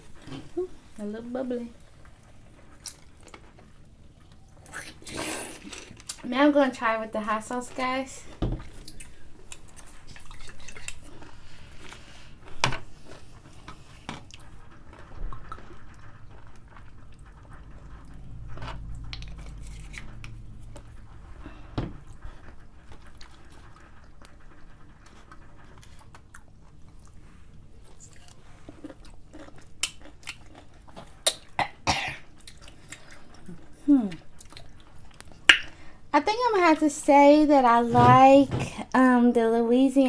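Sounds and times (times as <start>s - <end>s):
crunchy chewing of pickle: 8.7s - 21.2s, 22.2s - 35.5s.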